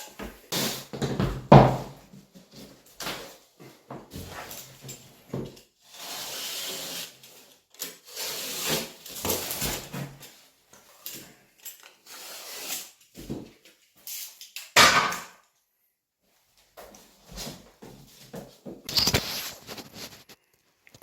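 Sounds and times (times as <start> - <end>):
gypsum board scraping cut: 5.8 - 10.0, 12.0 - 13.0.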